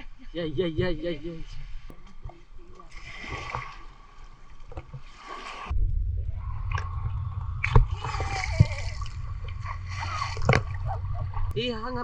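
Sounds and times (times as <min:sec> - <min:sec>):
sea water splashing at shore: 0:02.8 - 0:05.7, 0:07.6 - 0:11.2
steady low rumble: 0:05.7 - 0:12.0.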